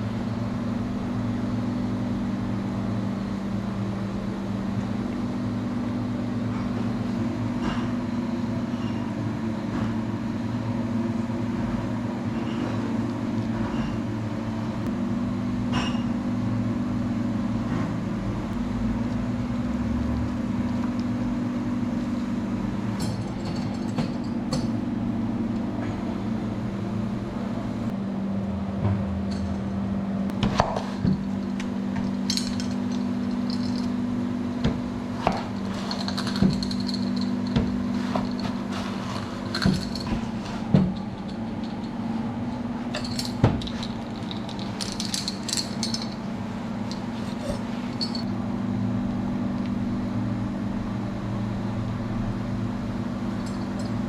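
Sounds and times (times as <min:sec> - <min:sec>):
steady low hum: 0:00.0 - 0:54.0
utensils clinking and knocking: 0:23.0 - 0:24.8, 0:30.6 - 0:34.0, 0:34.6 - 0:48.3, 0:53.4 - 0:54.0.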